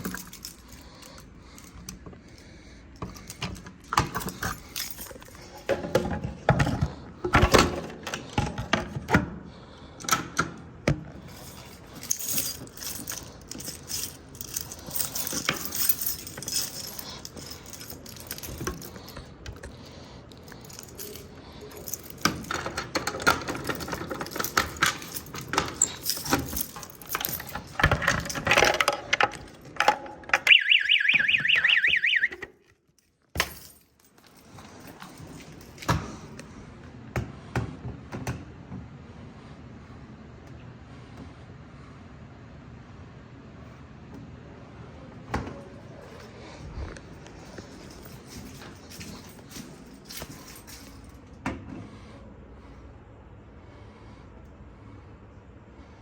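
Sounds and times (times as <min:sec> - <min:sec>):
equipment clicks and rattles: 0:10.0 - 0:36.0
pulsing electronic alarm tone: 0:30.5 - 0:32.4.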